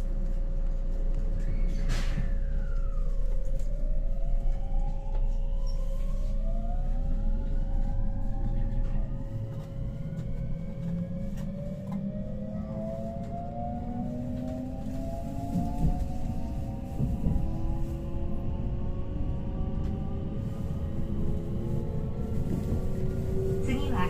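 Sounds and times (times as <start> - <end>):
train inverter whine: 0.0 - 24.0
train running rumble: 6.0 - 24.0.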